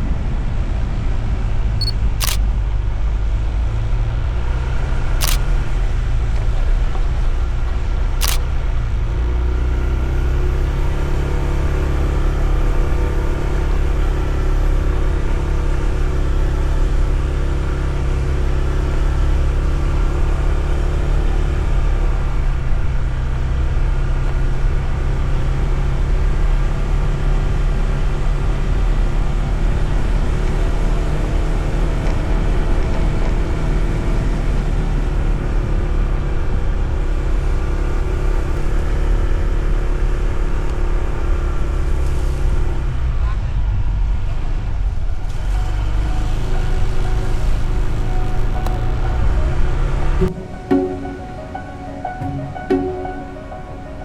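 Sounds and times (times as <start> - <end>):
sharp clicks: 1.8 - 2.4.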